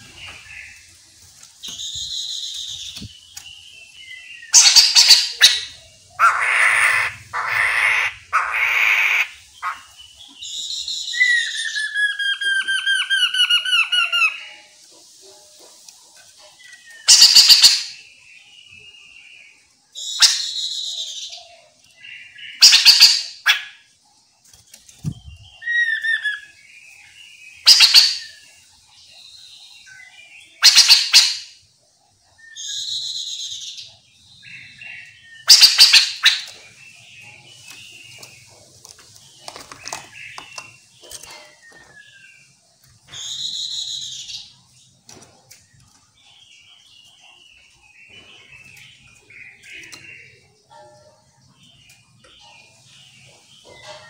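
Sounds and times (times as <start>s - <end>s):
bird harsh rasping calls: 4.5s - 15.9s, 16.9s - 18.1s, 22.1s - 23.9s, 27.6s - 28.4s, 30.6s - 31.6s, 32.5s - 42.5s.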